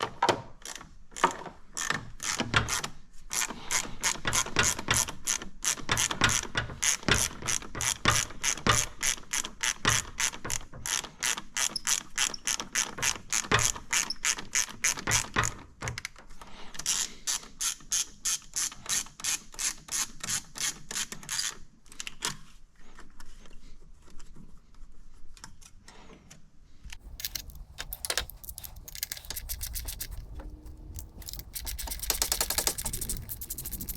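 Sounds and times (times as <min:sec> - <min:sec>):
ratchet wrench clicking: 0:27.0 - 0:33.9.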